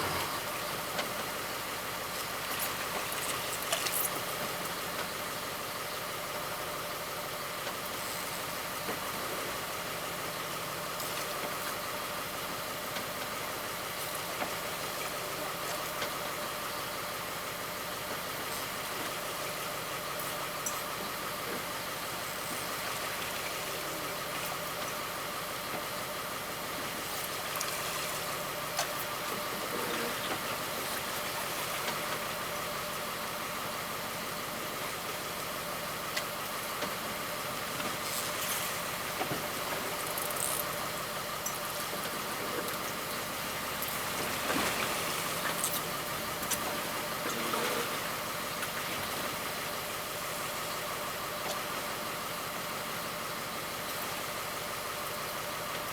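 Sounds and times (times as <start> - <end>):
boat engine running: 0.0 - 6.2.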